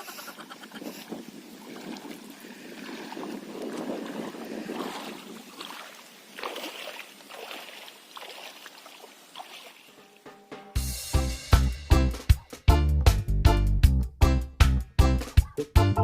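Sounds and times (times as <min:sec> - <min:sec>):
strong wind: 0:00.7 - 0:05.6
small waves lapping and splashing: 0:00.7 - 0:10.2.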